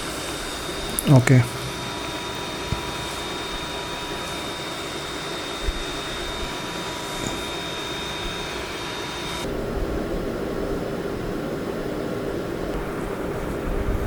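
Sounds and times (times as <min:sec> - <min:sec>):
machine whirring: 0:00.0 - 0:09.5
thin high whines: 0:00.0 - 0:09.5.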